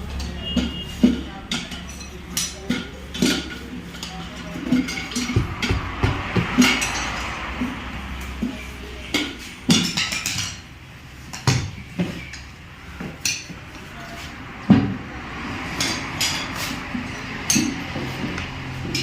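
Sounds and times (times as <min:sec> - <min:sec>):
metallic knocks and clinks: 0:00.2 - 0:07.8, 0:15.8 - 0:19.0.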